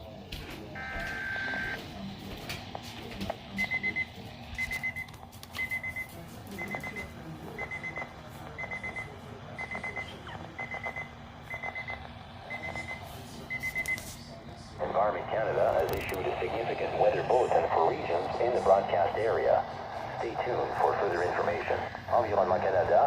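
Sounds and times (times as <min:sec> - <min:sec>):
weather radio alarm beeping: 0:00.8 - 0:01.8, 0:03.5 - 0:14.1, 0:14.8 - 0:23.0.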